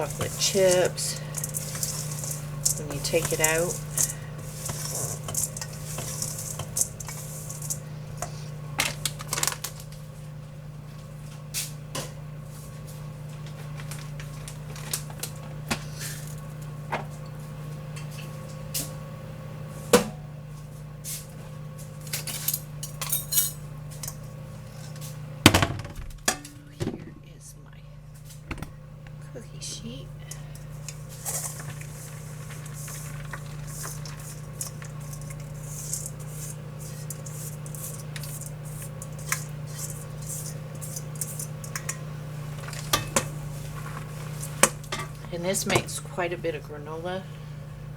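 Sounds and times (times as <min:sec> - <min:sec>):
spoon scraping a mixing bowl: 0:00.0 - 0:08.5, 0:30.4 - 0:45.9.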